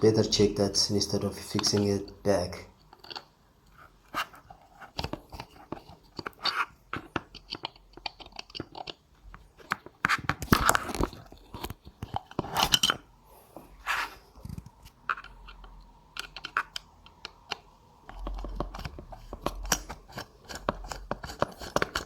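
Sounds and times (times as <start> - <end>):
clicks and crinkly crackling: 2.7 - 13.0.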